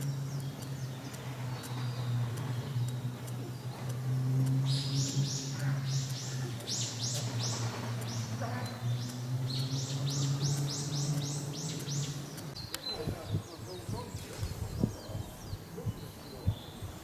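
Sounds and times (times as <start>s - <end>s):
songbird singing high notes: 0.0s - 13.5s
steady low hum: 0.0s - 17.0s.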